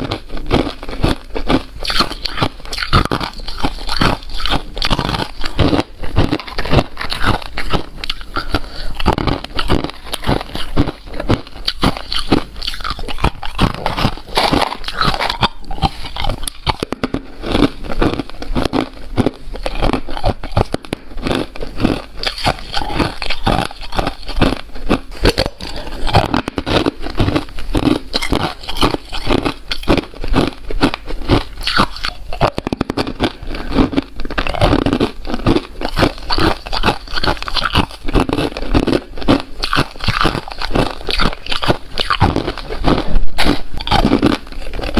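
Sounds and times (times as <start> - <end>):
ice being chewed: 0.0 - 44.9.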